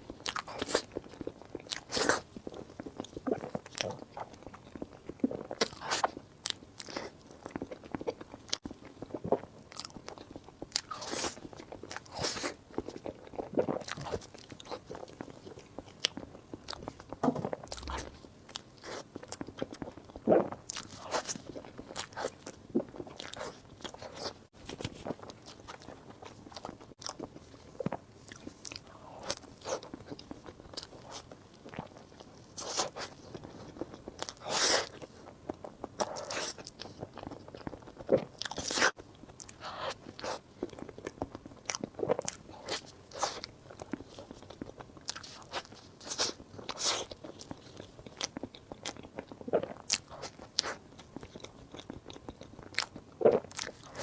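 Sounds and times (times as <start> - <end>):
person biting and chewing: 16.7 - 18.2
wet mouth sounds: 16.7 - 18.2.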